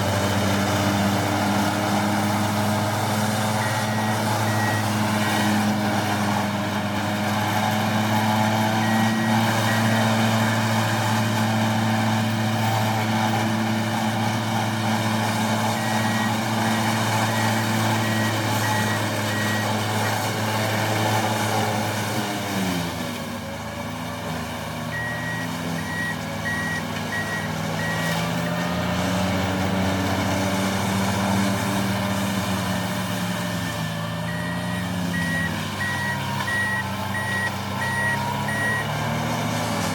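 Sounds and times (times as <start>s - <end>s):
diesel engine running hard: 0.0s - 39.9s
reversing alarm beeping: 3.5s - 5.5s, 8.8s - 10.2s, 15.6s - 20.2s, 24.9s - 28.2s, 34.0s - 38.9s.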